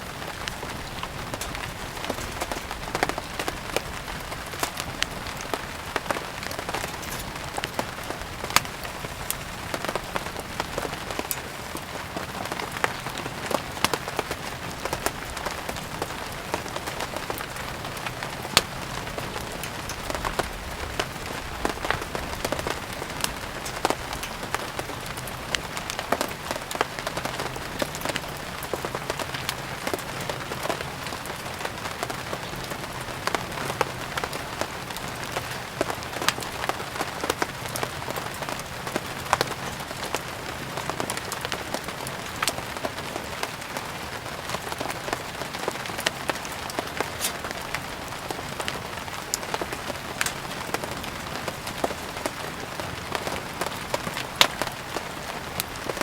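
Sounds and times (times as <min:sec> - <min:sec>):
steady rain falling: 0:00.0 - 0:56.0
wood fire crackling and popping: 0:00.0 - 0:56.0.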